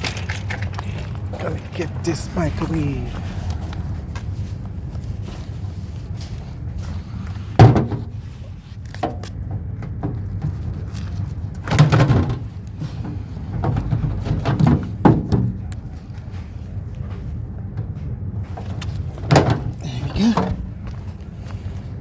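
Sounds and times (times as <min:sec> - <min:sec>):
microwave oven knocks and clatter: 0:07.6 - 0:08.2, 0:11.6 - 0:12.5, 0:13.1 - 0:15.8, 0:19.2 - 0:19.8.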